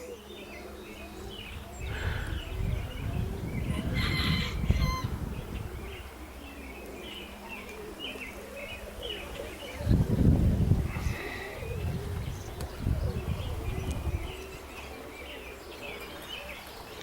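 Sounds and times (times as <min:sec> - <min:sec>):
small birds chirping: 0:00.0 - 0:17.0
low rumbling: 0:01.2 - 0:07.3.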